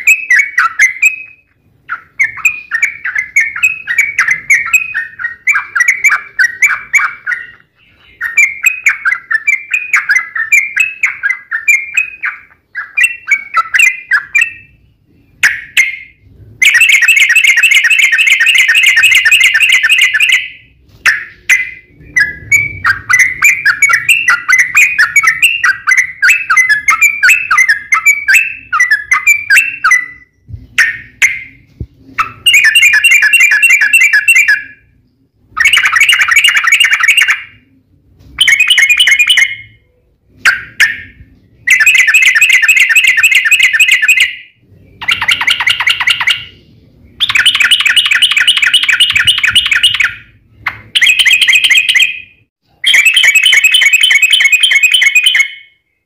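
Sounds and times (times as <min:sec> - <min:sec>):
bird chattering trills: 0:45.0 - 0:55.6.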